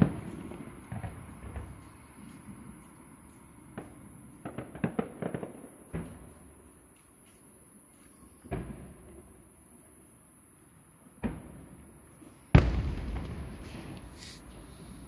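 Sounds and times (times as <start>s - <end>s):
firework shells booming: 12.5s - 15.0s.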